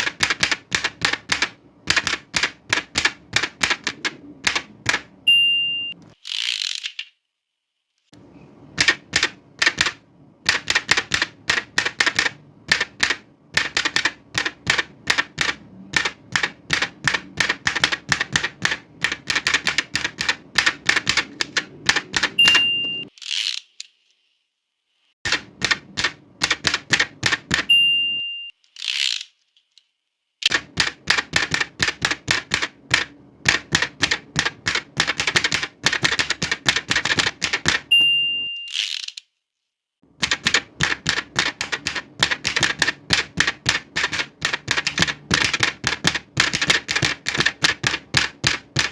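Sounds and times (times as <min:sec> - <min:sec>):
typewriter carriage return: 0:00.0 - 0:05.2, 0:08.8 - 0:23.6, 0:25.3 - 0:27.8, 0:30.4 - 0:39.2, 0:40.2 - 0:48.9
typewriter keystrokes clacking: 0:00.0 - 0:05.2, 0:08.8 - 0:23.1, 0:25.3 - 0:27.7, 0:30.4 - 0:37.9, 0:40.2 - 0:48.9
typewriter bell ringing: 0:05.3 - 0:06.0, 0:22.4 - 0:23.1, 0:27.7 - 0:28.5, 0:37.9 - 0:38.8.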